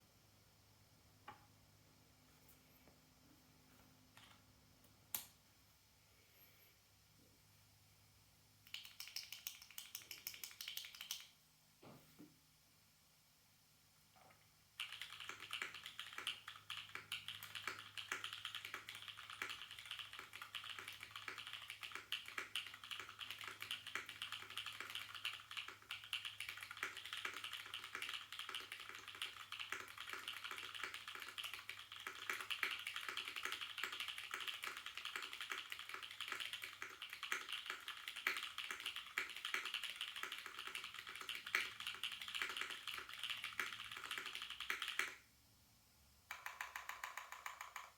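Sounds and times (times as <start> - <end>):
fast mechanical keyboard typing: 8.7 - 11.3, 14.8 - 45.2, 46.3 - 47.9.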